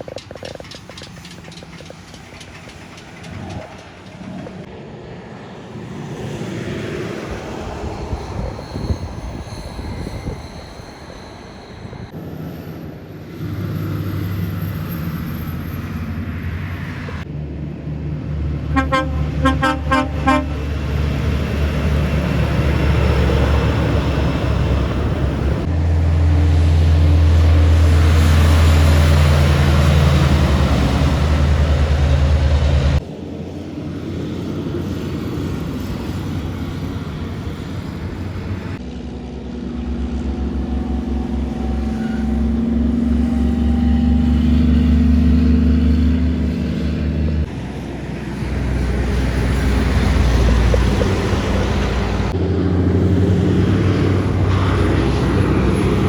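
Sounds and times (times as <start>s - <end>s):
heavy truck engines: 0.0s - 56.0s
truck horn toots: 18.7s - 20.9s.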